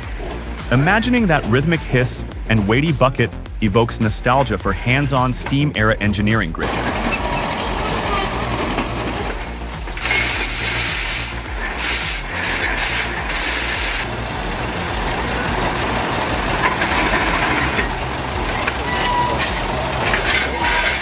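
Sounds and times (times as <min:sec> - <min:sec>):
low machinery rumble: 0:00.0 - 0:21.0
steam hissing bursts: 0:06.6 - 0:21.0.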